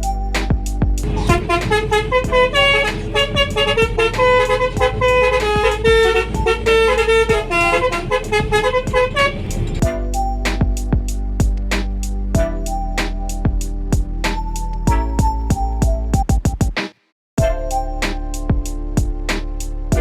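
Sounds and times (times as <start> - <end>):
background music with beat: 0.0 - 20.0
multi-tone bus horn tune: 1.1 - 10.4, 17.4 - 18.0.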